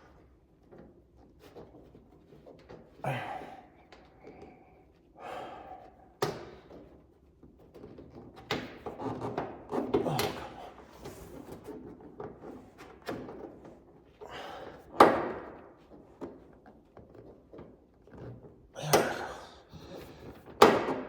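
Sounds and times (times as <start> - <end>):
knocks and rattles of car parts: 14.8 - 19.5, 20.2 - 21.0.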